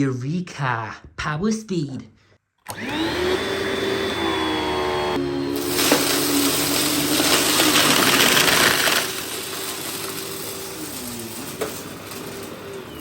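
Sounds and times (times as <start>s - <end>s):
vacuum cleaner motor whine: 2.7s - 13.0s
vacuum motor winding down: 2.7s - 13.0s
grit rattling through vacuum: 5.6s - 13.0s.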